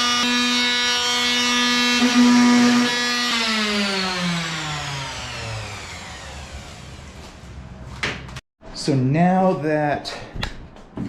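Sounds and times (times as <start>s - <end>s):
power tool high whine: 0.0s - 7.3s
motor spinning down: 0.0s - 7.5s.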